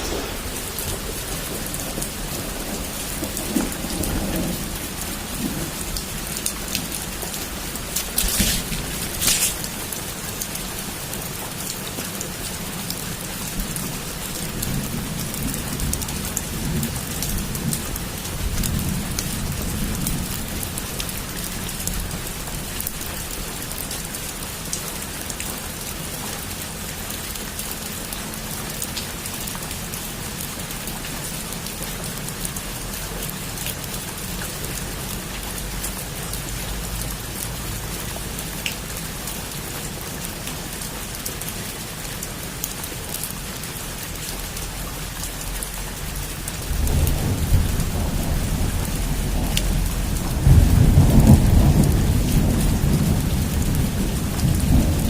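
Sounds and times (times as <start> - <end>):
thunder rumbling: 0.0 - 10.1, 46.6 - 55.0
heavy rain on a roof: 0.0 - 55.0.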